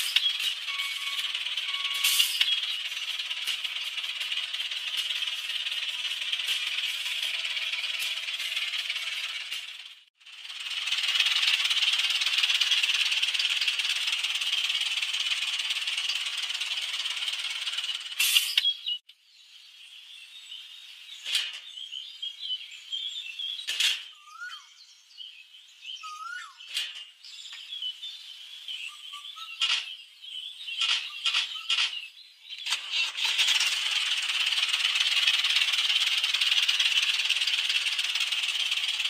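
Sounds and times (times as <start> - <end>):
faint bird chirps: 18.4 - 32.8.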